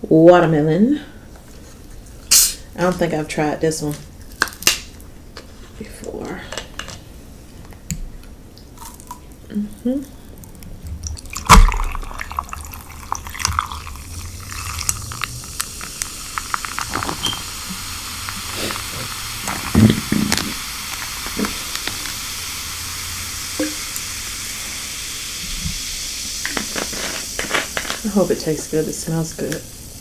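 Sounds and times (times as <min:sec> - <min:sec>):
steady high hiss: 0:01.5 - 0:06.4, 0:07.0 - 0:30.0.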